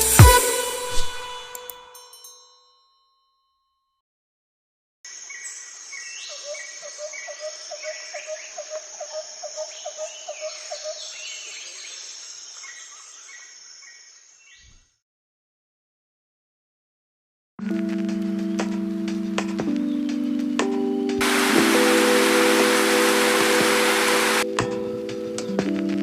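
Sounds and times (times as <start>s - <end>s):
birds calling: 5.2s - 14.7s, 21.2s - 24.4s
low repeating bird calls: 5.2s - 14.8s, 21.2s - 24.4s
high insect drone: 21.2s - 24.4s.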